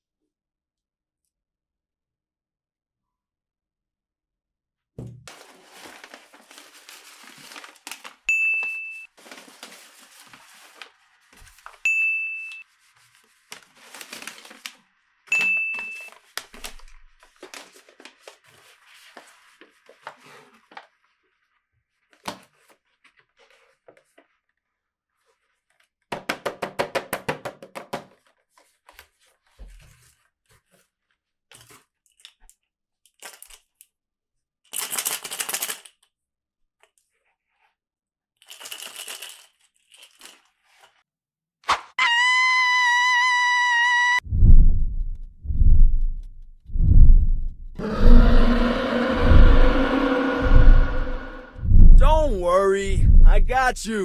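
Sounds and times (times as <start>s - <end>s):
packaging tearing and crinkling: 5.3s - 8.2s.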